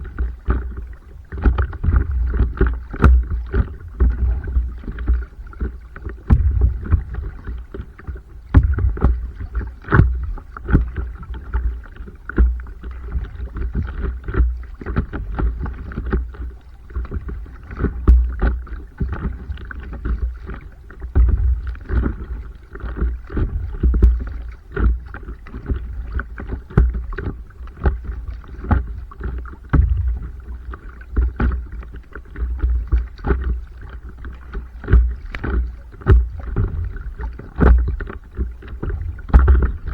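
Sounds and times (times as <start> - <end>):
paddle strokes: 0.0 - 39.9
water splashing against board: 0.0 - 39.9
low rumble: 6.3 - 7.7.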